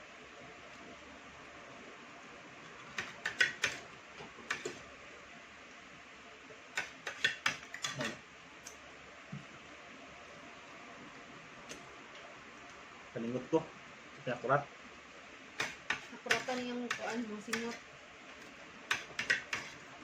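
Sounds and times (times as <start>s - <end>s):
cutlery clinking against plates: 6.8s - 8.2s.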